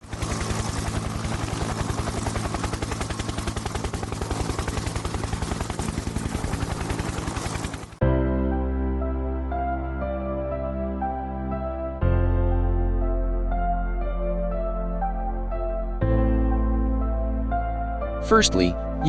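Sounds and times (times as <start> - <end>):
fast mechanical pulsing: 0.0 - 8.0.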